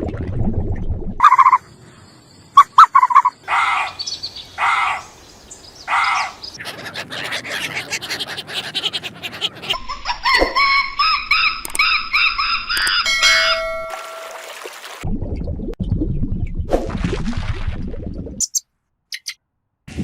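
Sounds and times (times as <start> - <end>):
bird calls: 1.2 - 13.7, 18.4 - 19.4.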